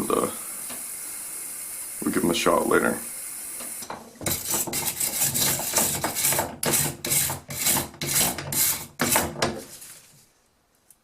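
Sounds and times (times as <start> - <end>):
rubbing strokes on metal drill bit: 4.3 - 9.2.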